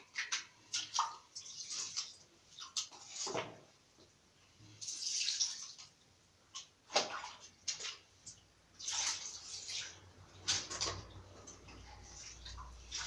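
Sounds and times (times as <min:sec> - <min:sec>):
scrubbing strokes: 0:00.0 - 0:03.7, 0:08.8 - 0:13.0
water splashing: 0:00.0 - 0:03.7, 0:04.8 - 0:06.0, 0:06.6 - 0:13.0.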